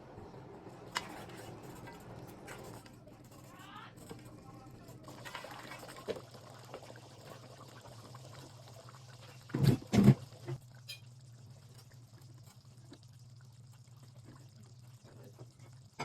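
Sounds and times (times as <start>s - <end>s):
liquid pouring: 5.0s - 15.9s.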